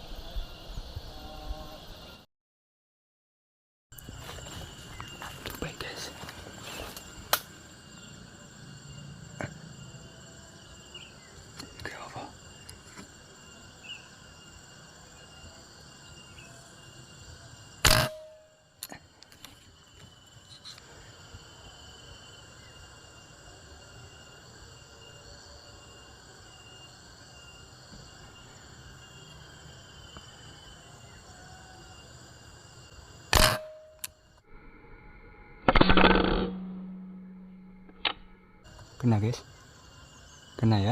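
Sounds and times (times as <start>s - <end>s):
insects chirring: 0.0s - 2.3s, 3.9s - 40.9s
air rifle shot: 17.8s - 18.4s, 33.3s - 33.8s.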